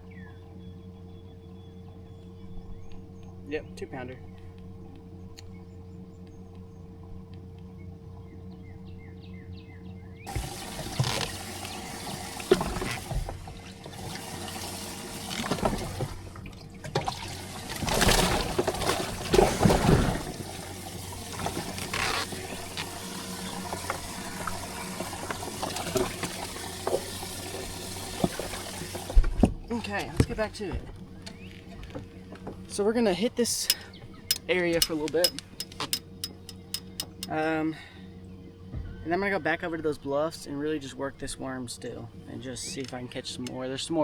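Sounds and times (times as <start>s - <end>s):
water splashing and sloshing: 10.3s - 32.8s.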